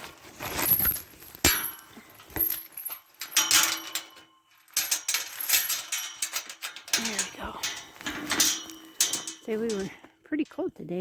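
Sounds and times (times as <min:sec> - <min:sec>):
metal gate latch clinking and rattling: 0:00.8 - 0:10.1
sharp metal knocks: 0:03.3 - 0:10.0.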